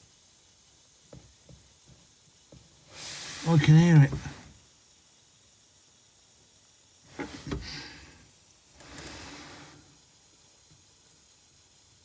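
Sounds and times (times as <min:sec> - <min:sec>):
person breathing heavily: 0:07.6 - 0:08.2.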